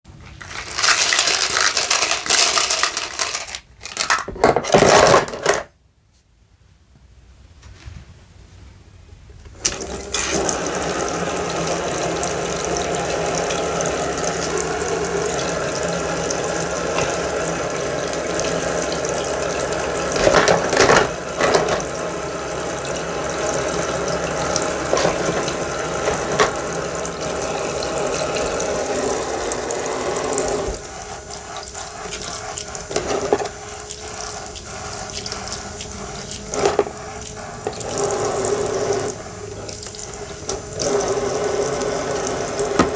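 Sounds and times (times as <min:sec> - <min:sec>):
faucet running into sink: 0:09.6 - 0:42.9.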